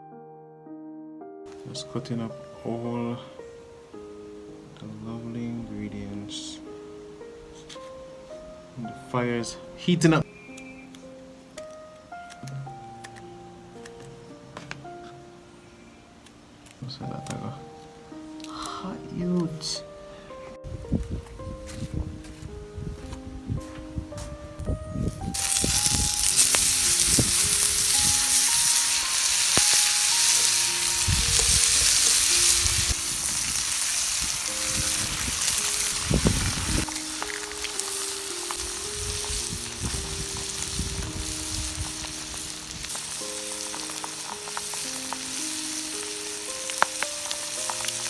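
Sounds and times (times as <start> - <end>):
food sizzling in a pot: 25.2 - 48.0.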